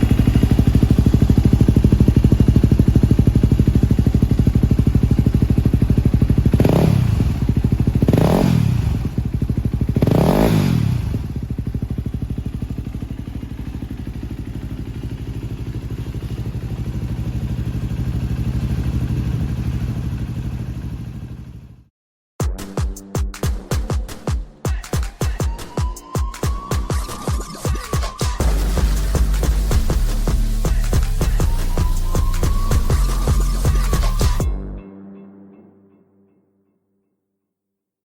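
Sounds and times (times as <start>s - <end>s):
motorcycle engine idling and revving: 0.0s - 21.9s, 26.5s - 34.5s.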